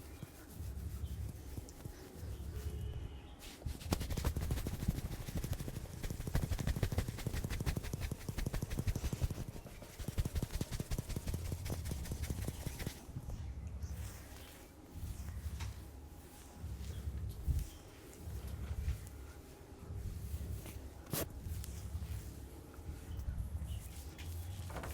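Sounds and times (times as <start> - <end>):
hands tapping scalp and hair: 3.6 - 13.3.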